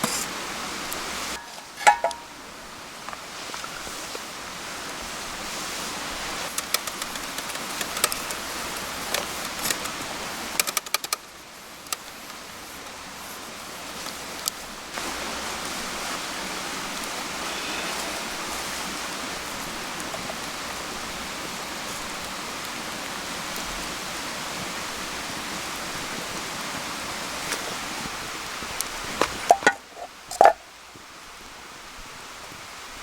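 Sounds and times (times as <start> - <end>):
steady hiss: 0.0 - 33.0
sharp knocks and clinks: 1.4 - 2.4, 29.5 - 30.6.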